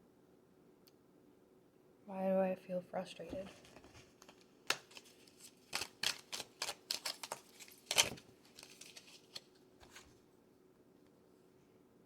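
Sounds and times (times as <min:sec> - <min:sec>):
cards flicking and tapping: 0:03.4 - 0:10.0.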